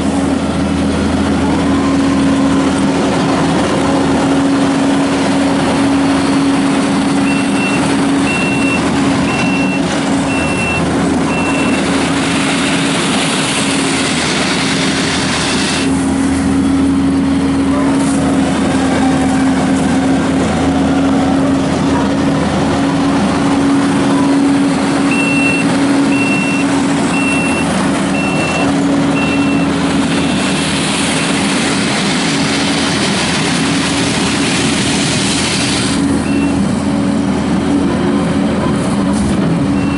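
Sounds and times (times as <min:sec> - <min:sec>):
diesel engine running: 0:00.0 - 0:39.9
reversing alarm beeps: 0:07.2 - 0:11.8, 0:25.0 - 0:30.4, 0:36.2 - 0:36.6.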